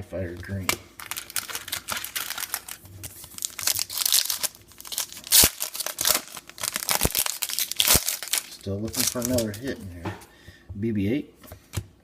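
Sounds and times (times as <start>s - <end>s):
plastic wrapper crinkling and tearing: 1.0s - 9.8s.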